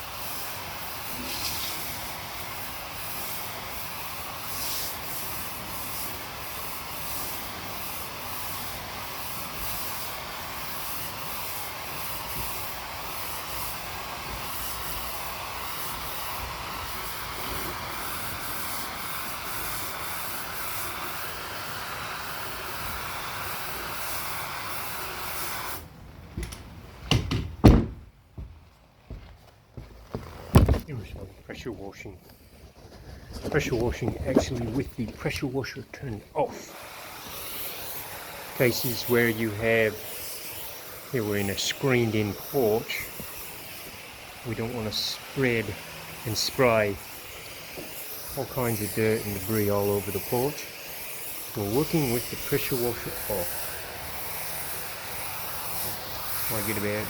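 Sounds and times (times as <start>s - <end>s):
water spray hissing on wood: 0.0s - 25.9s, 30.5s - 57.0s
loud knocks: 27.1s - 29.2s.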